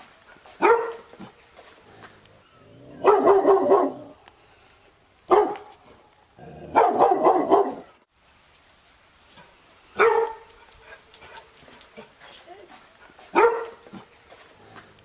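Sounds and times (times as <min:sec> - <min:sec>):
dog barking: 0:00.6 - 0:01.1, 0:03.0 - 0:04.2, 0:05.3 - 0:05.7, 0:06.7 - 0:08.0, 0:10.0 - 0:10.5, 0:13.3 - 0:14.0.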